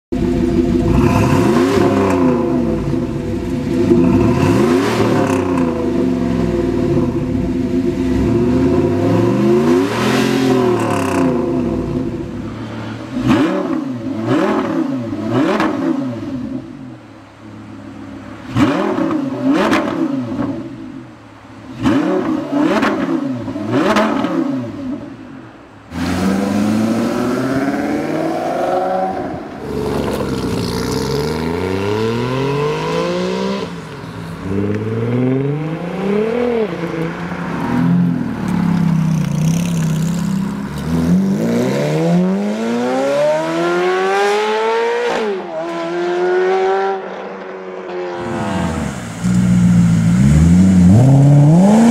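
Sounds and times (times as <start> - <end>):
car engine revving in blips: 0.4 - 12.3, 13.1 - 16.7, 18.5 - 20.8, 21.7 - 25.2, 25.9 - 51.9
car engine revving in sweeps: 25.9 - 51.9.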